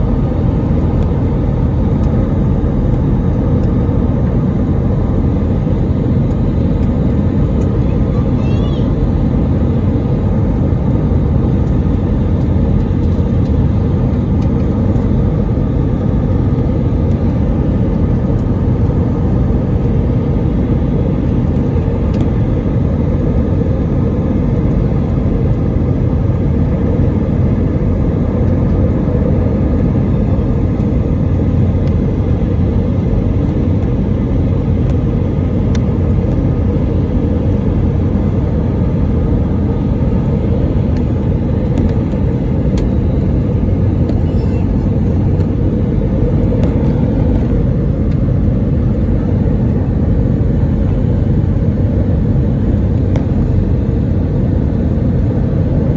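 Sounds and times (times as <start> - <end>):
airliner low rumble: 0.0 - 55.9.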